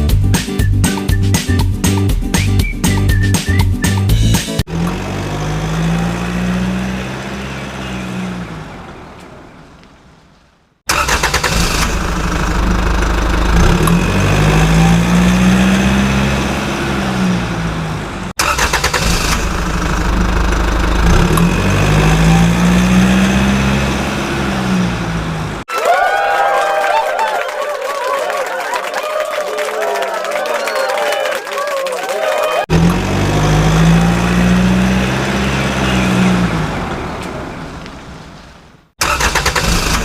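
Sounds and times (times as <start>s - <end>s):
engine revving: 4.2s - 9.2s, 10.9s - 25.7s, 32.6s - 37.7s, 39.0s - 40.0s.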